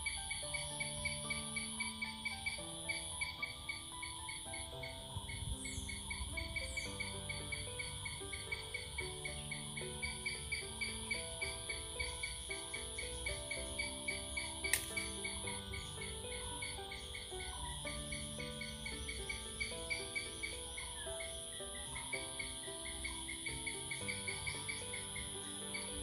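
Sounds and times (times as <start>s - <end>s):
crickets chirping: 0.0s - 26.0s
high insect trill: 0.0s - 26.0s
soft background music: 0.0s - 26.0s
sharp click: 14.6s - 15.4s.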